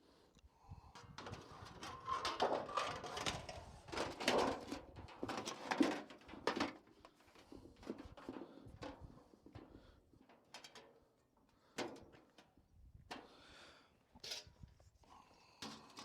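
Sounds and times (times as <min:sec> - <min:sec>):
chimney liner scraping and rustling: 0:01.2 - 0:06.7.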